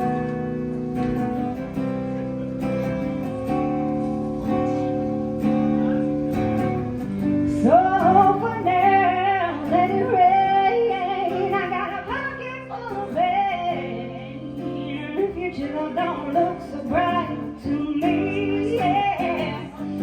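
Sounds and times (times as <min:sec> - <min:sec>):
acoustic guitar strumming: 0:00.0 - 0:20.0
woman singing: 0:06.6 - 0:20.0.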